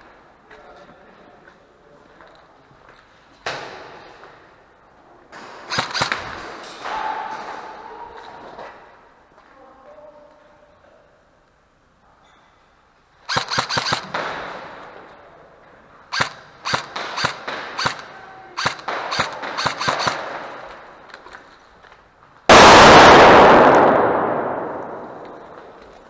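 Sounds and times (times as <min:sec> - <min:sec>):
airsoft guns firing in bursts: 0:05.3 - 0:08.0, 0:13.3 - 0:15.1, 0:16.0 - 0:21.2, 0:22.5 - 0:26.0
very loud bang with echo: 0:22.5 - 0:26.0.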